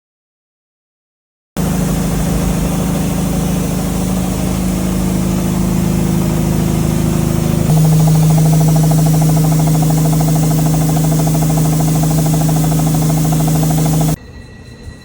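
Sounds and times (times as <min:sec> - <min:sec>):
car engine idling: 0:01.6 - 0:14.2.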